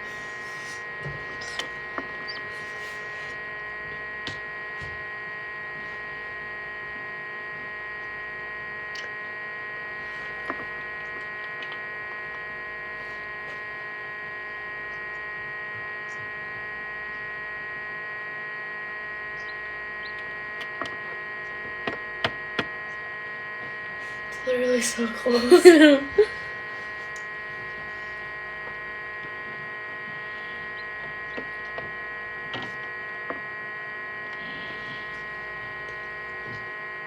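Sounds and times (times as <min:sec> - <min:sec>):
incubator electrical hum: 0:00.0 - 0:37.0.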